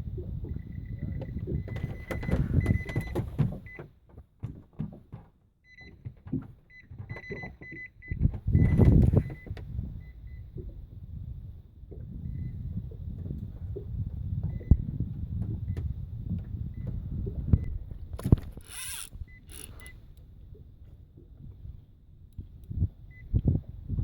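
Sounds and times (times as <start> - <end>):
scattered knocks: 1.2 - 5.3.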